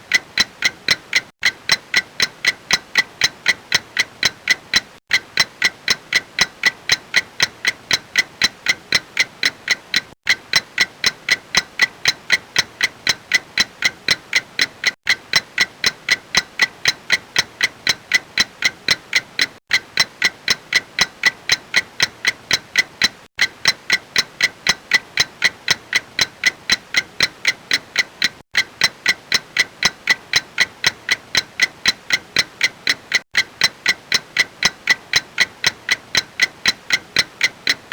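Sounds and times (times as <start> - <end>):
clock ticking: 0.0 - 37.9.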